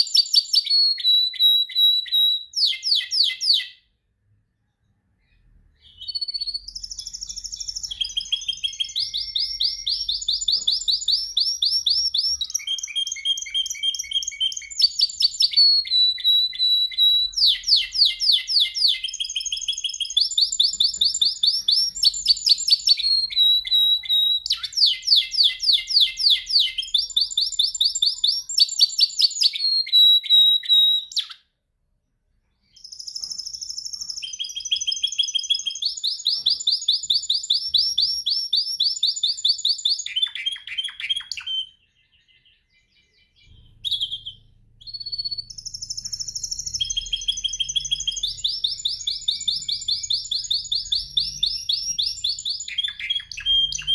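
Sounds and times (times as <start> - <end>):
canary singing trills: 0.0 - 3.9, 5.2 - 31.5, 32.6 - 53.9.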